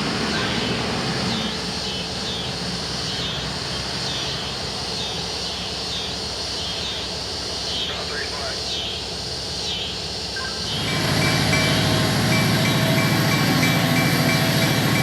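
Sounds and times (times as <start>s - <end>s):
diesel locomotive running: 0.0s - 15.0s
high-pitched pulsing hiss: 0.0s - 15.0s.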